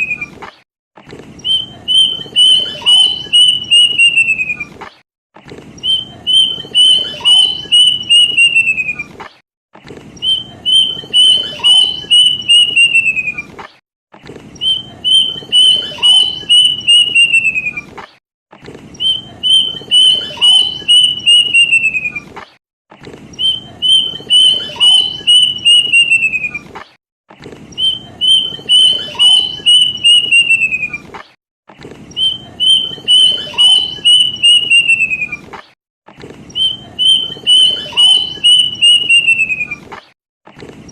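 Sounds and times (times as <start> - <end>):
cuckoo whistled song: 0.0 - 0.4, 1.4 - 4.8, 5.8 - 9.1, 10.2 - 13.5, 14.6 - 17.9, 19.0 - 22.3, 23.4 - 26.7, 27.8 - 31.1, 32.1 - 35.5, 36.5 - 39.9.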